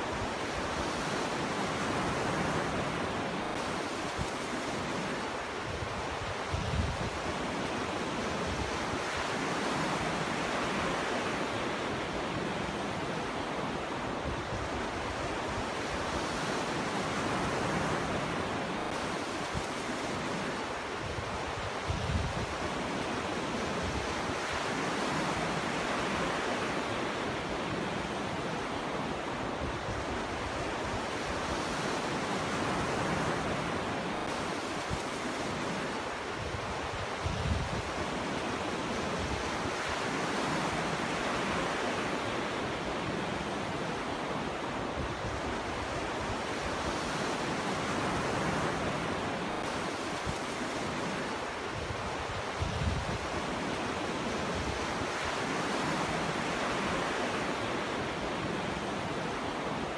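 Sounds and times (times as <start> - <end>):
ocean waves breaking: 0.0 - 59.9.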